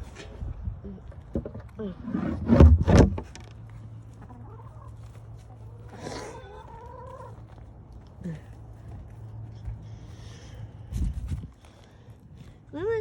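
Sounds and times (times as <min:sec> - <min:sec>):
chickens clucking: 0:03.9 - 0:07.7.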